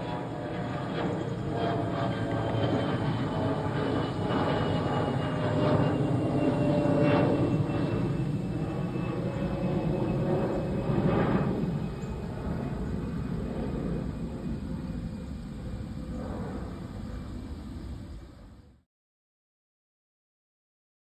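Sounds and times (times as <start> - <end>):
aircraft engines running: 0.0 - 18.8
airliner flying past: 0.0 - 18.8.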